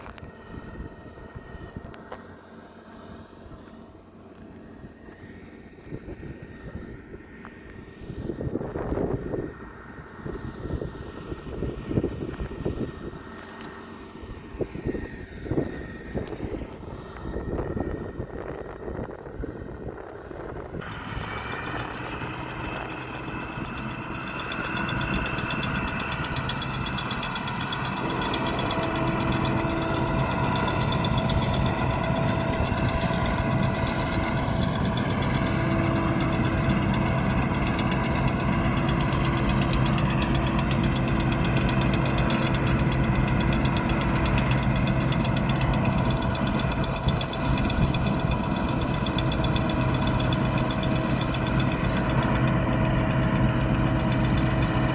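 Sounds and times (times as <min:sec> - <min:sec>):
diesel engine running: 0:00.0 - 0:54.9
machinery hum: 0:00.0 - 0:54.9.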